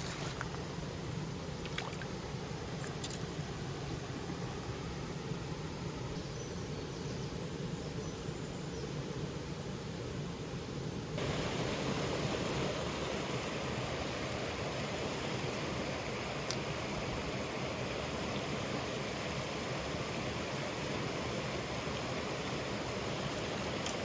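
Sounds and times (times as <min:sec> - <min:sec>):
stream rushing over rocks: 0:00.0 - 0:01.0, 0:01.6 - 0:05.7, 0:11.2 - 0:24.0.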